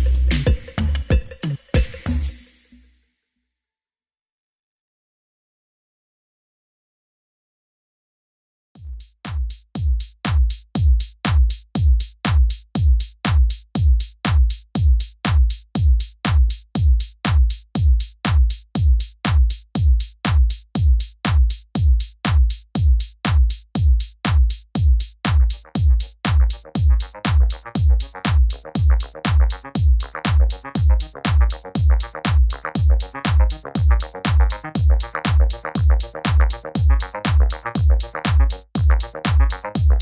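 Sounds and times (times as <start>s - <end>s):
drum machine kick beat: 0.0s - 2.7s, 8.8s - 40.0s
electronic music layer: 0.0s - 2.8s, 25.4s - 40.0s.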